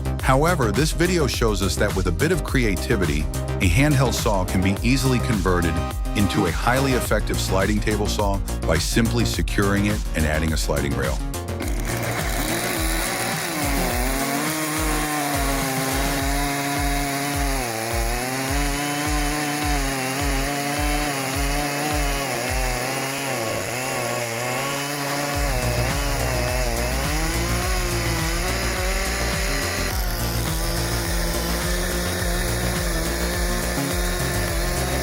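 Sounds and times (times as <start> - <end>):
music with steady beat: 0.0 - 17.6, 25.3 - 35.0
power saw cutting wood: 0.0 - 35.0.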